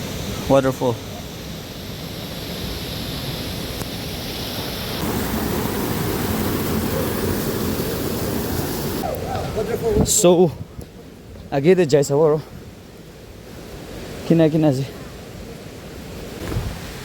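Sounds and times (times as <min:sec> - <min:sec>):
waterfall rushing: 0:00.0 - 0:10.4.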